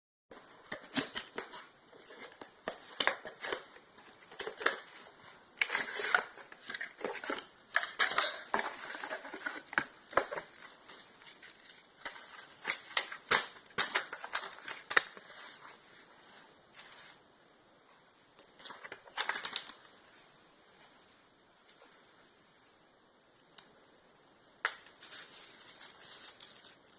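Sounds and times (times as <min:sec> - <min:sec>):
packaging crinkling: 0:00.7 - 0:15.5, 0:18.6 - 0:19.9, 0:24.7 - 0:26.9.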